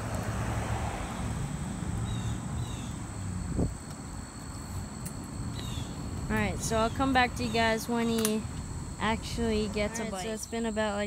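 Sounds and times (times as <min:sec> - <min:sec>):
high insect drone: 0:00.0 - 0:11.0
bird chirps: 0:05.6 - 0:06.0.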